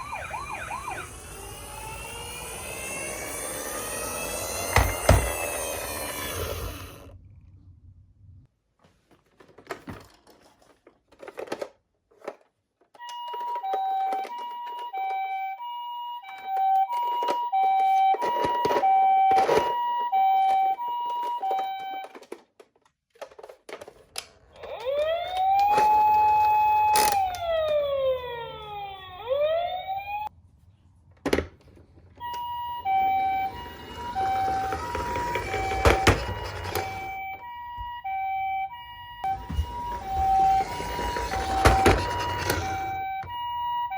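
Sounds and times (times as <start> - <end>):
toy two-tone electronic siren: 0.0 - 7.1, 13.0 - 22.4, 24.5 - 30.3, 32.2 - 43.9.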